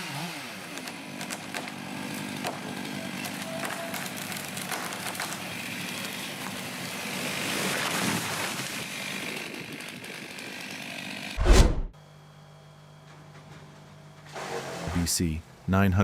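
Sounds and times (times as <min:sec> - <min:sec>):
heavy thump: 0:11.4 - 0:11.9.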